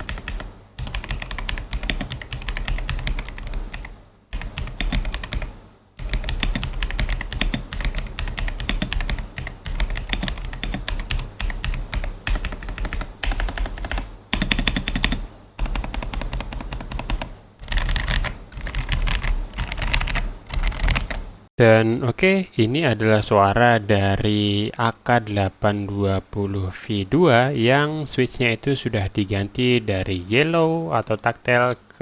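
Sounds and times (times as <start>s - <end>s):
mechanical keyboard typing: 0.0s - 21.3s.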